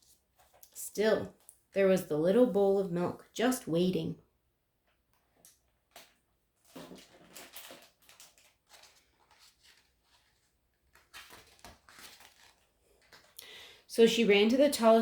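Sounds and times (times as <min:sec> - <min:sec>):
book page turning: 0:00.0 - 0:00.8, 0:05.9 - 0:13.4.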